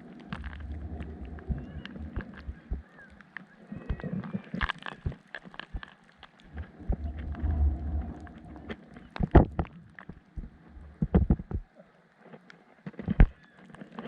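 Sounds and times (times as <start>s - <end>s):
low rumble: 0.0s - 2.9s, 6.4s - 11.2s.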